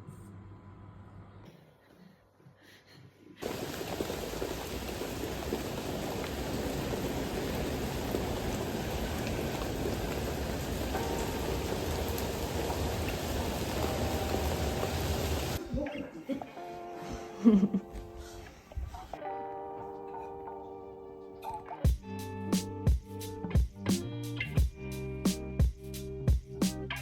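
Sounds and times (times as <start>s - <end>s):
rain falling: 3.4s - 15.6s.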